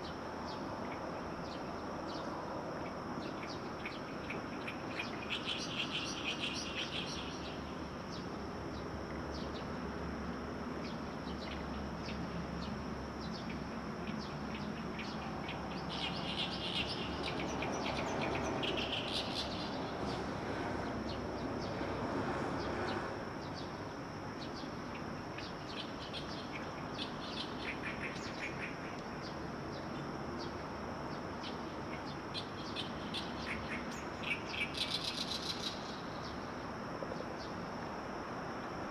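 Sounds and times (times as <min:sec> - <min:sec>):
steady background hiss: 0:00.0 - 0:38.9
songbirds chirping: 0:10.8 - 0:37.7.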